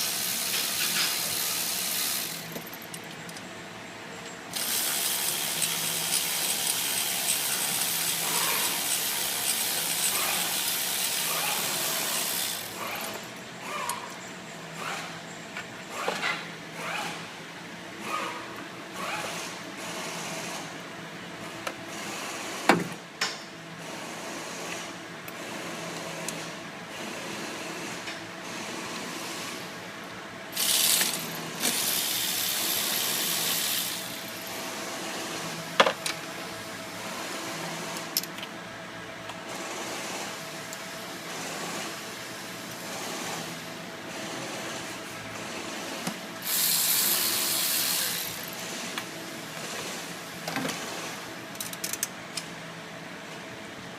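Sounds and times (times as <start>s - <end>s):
hissing bursts: 46.4s - 48.5s.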